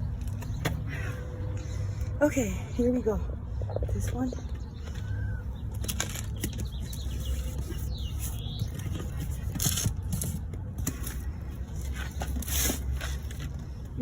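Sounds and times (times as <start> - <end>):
rustling scraping and clicks: 5.7 - 13.8.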